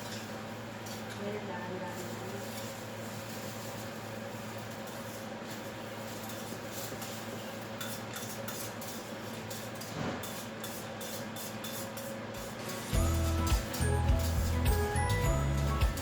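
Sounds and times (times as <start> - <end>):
background music with a beat: 12.8 - 16.0.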